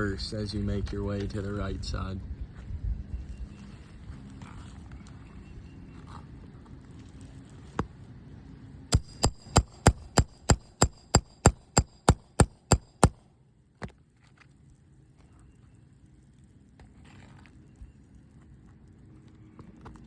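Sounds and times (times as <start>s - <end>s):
hammer striking metal tool: 9.0s - 13.2s.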